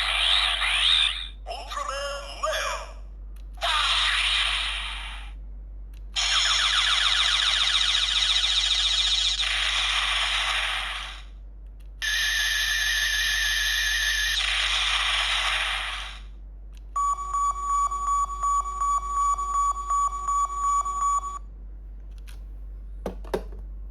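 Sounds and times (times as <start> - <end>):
toy noisy blasts: 3.6 - 5.3, 6.2 - 11.2, 12.0 - 16.2.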